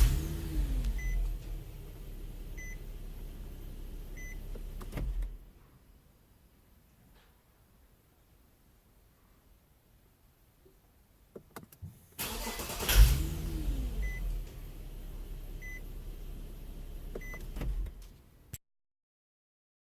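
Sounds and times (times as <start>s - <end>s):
car engine cranking and idling: 0.0s - 5.5s, 12.2s - 18.2s.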